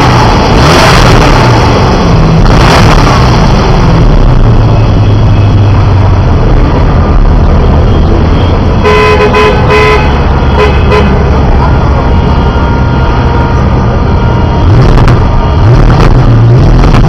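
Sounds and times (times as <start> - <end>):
car engine revving and idling: 0.0 - 17.0
car horn toots: 8.0 - 15.8.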